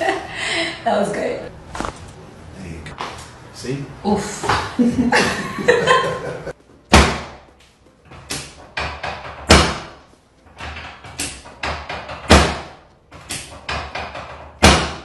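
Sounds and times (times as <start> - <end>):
sharp thumps and slaps: 8.2 - 10.0, 10.6 - 15.0.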